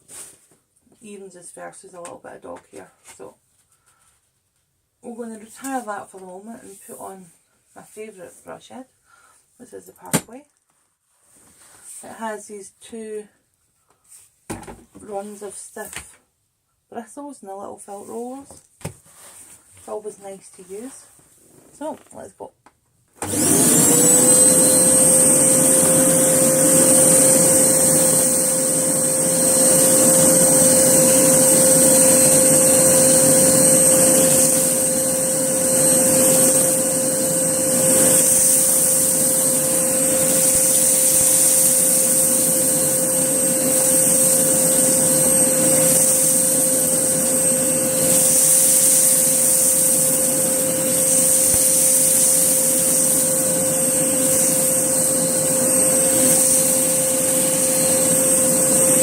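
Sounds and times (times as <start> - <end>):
vacuum cleaner running: 23.2 - 59.0.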